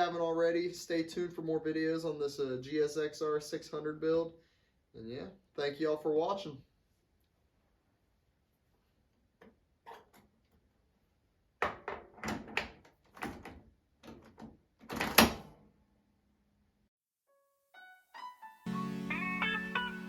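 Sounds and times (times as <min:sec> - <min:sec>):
background music: 0:17.3 - 0:20.0
plucked guitar notes: 0:18.7 - 0:20.0.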